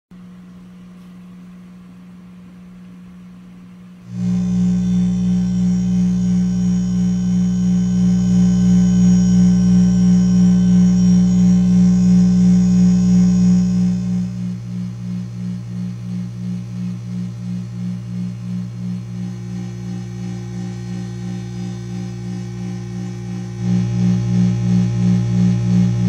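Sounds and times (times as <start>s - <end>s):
electronic synth drone: 4.1s - 26.0s.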